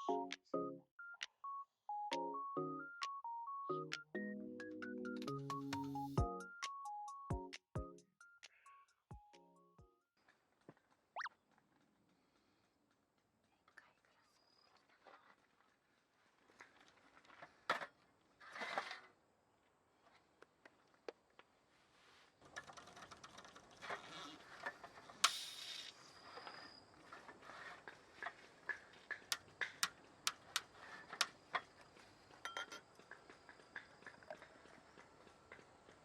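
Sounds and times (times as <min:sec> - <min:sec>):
objects clicking and knocking: 0:32.4 - 0:33.4.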